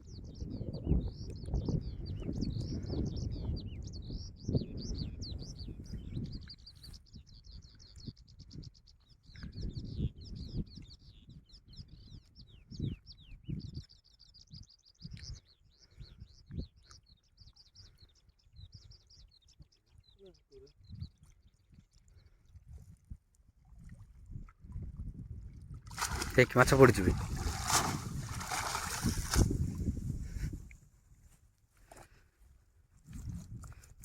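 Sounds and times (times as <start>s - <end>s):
small birds chirping: 0.1s - 22.6s.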